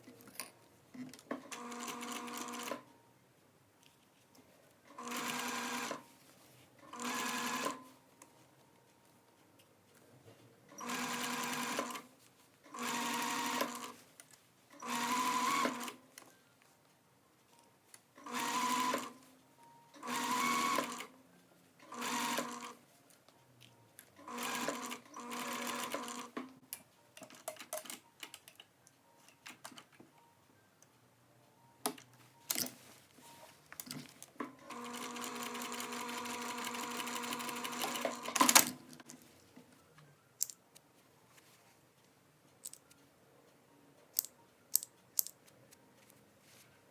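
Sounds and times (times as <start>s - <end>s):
sewing machine stitching: 5.0s - 6.0s, 10.8s - 12.0s, 12.7s - 14.0s, 18.2s - 19.2s, 20.0s - 21.1s, 24.2s - 26.4s, 34.6s - 38.8s.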